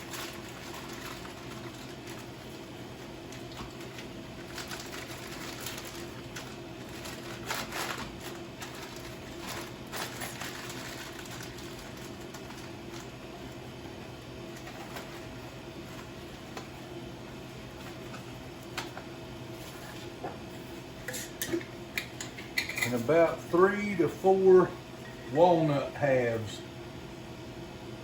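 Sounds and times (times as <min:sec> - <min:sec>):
dry ingredients rustling and clicking: 0:00.0 - 0:13.9
steady low hum: 0:00.0 - 0:28.0.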